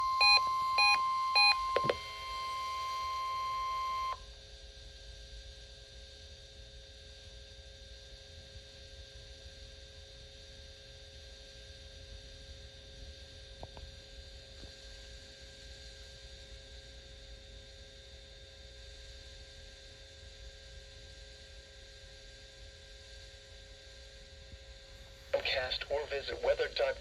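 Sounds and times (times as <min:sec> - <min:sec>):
faint high whine: 0:25.4 - 0:27.0
low steady hum: 0:25.4 - 0:27.0.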